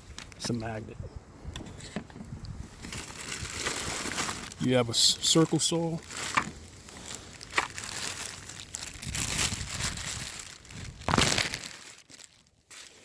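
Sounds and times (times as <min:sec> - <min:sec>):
tool handling rustle: 0:05.3 - 0:09.0.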